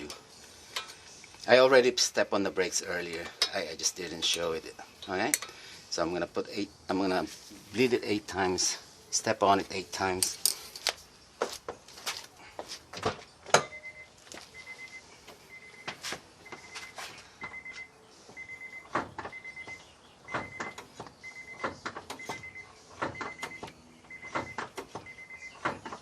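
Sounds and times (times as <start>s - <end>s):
car warning chime beeping: 13.6s - 25.6s.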